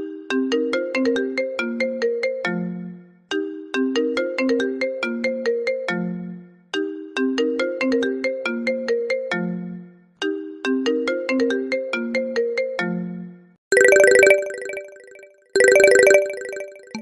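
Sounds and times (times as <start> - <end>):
phone ringtone melody: 13.7 - 17.0.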